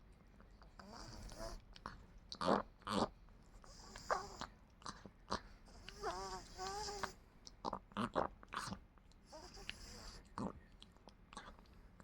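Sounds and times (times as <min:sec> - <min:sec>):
small dog whining: 0:05.9 - 0:07.1.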